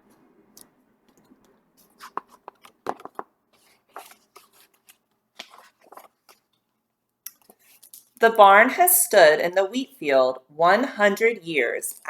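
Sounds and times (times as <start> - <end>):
book pages rustling and tapping: 1.1 - 6.6.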